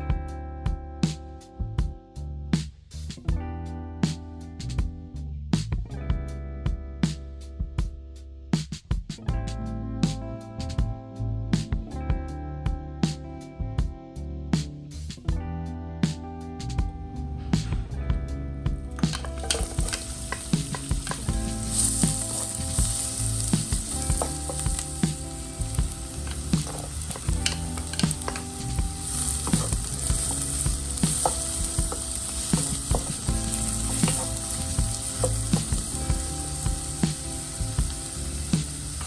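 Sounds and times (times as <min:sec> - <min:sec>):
food sizzling in a pan: 0:18.9 - 0:39.0.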